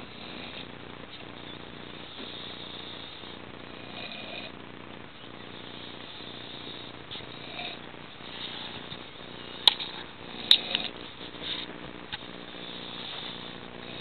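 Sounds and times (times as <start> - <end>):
man snoring heavily: 0.0 - 0.7, 2.0 - 4.6, 5.6 - 7.8, 10.2 - 11.0, 12.5 - 14.0.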